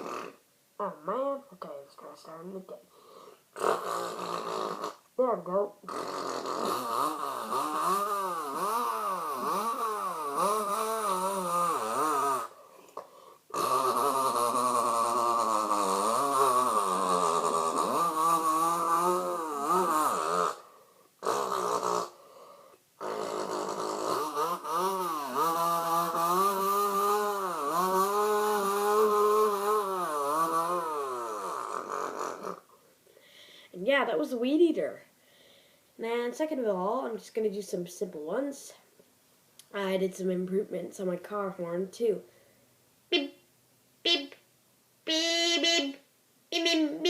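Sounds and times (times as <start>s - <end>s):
person imitating trimmer engine: 0.0s - 1.3s, 3.6s - 12.6s, 13.5s - 22.2s, 23.0s - 32.6s, 44.0s - 44.4s, 45.1s - 47.0s.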